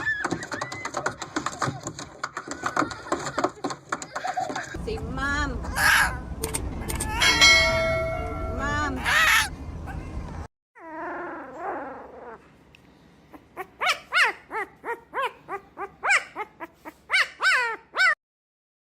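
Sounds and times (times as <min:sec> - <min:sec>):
dog yelping: 0:05.7 - 0:07.5, 0:09.0 - 0:10.0, 0:10.8 - 0:12.4, 0:13.3 - 0:18.2
dog whining: 0:10.8 - 0:12.6, 0:13.3 - 0:18.2.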